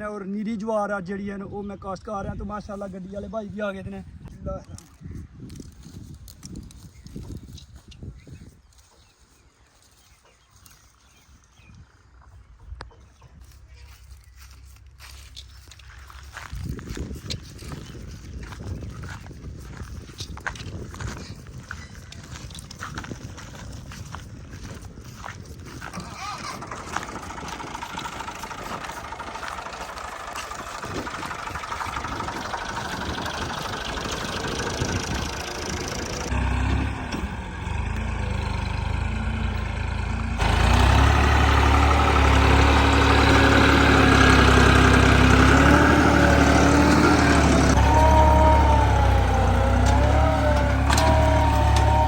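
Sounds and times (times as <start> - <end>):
diesel engine running: 13.4 - 52.0.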